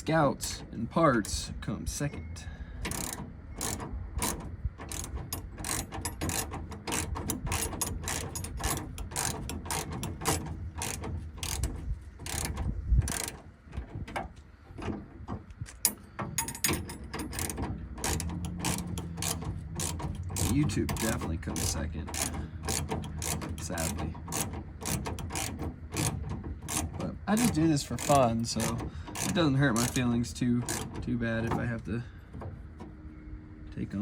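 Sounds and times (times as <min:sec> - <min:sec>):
ratchet wrench clicking: 0:02.8 - 0:13.4, 0:15.8 - 0:31.0.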